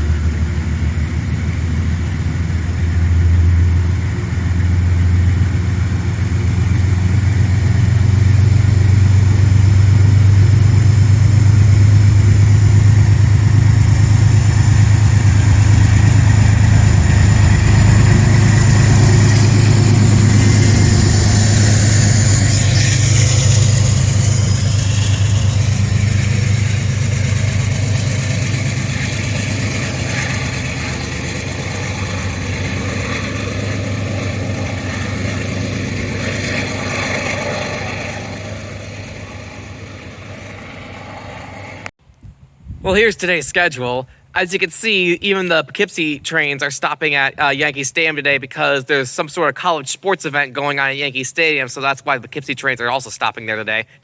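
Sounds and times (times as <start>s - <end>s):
diesel locomotive engine drone: 0.0s - 42.0s
faint high whine: 18.5s - 41.9s.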